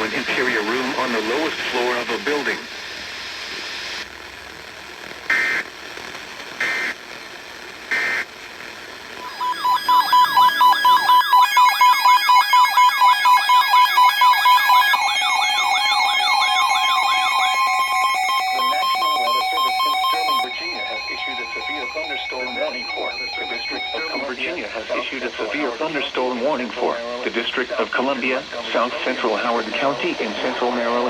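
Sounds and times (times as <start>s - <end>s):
warbling electronic alert tone: 9.2s - 24.3s
digital data tone bursts: 9.2s - 24.4s.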